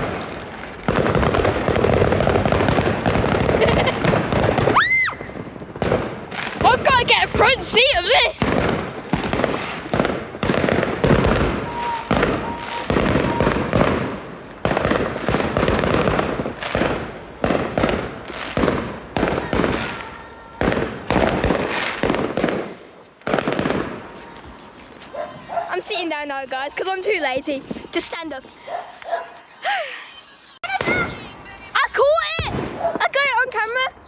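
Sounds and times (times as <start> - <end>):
fireworks bangs: 0.0 - 28.6, 30.6 - 33.9.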